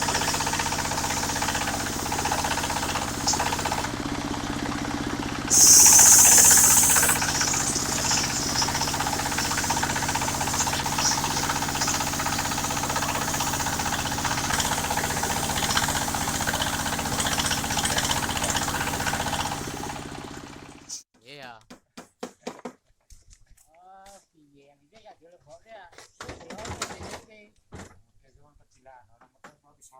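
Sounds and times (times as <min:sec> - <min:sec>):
loud high hiss: 0:00.0 - 0:21.0
sawmill engine pulsing: 0:00.0 - 0:21.0.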